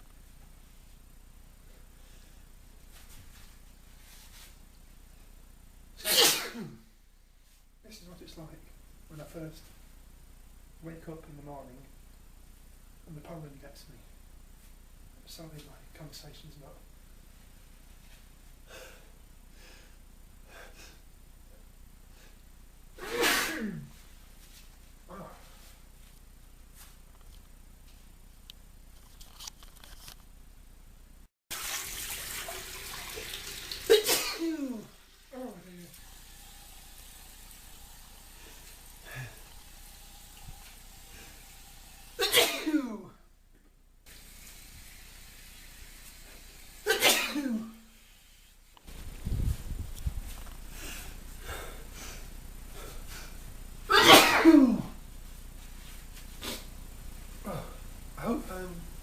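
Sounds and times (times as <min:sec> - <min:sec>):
man sneezing: 0:06.0 - 0:06.9, 0:23.0 - 0:24.0, 0:33.9 - 0:34.9, 0:39.0 - 0:39.5, 0:42.2 - 0:43.2, 0:46.9 - 0:47.8, 0:53.9 - 0:55.0, 0:56.4 - 0:56.7, 0:57.4 - 0:57.8.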